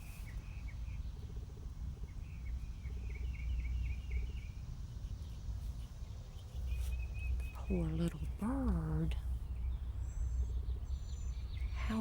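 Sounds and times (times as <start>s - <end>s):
bird chirping: 2.0s - 12.0s.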